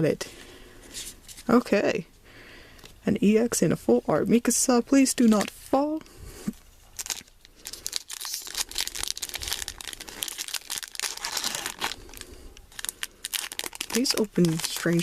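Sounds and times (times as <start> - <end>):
foil wrapper tearing and crinkling: 7.0 - 15.0.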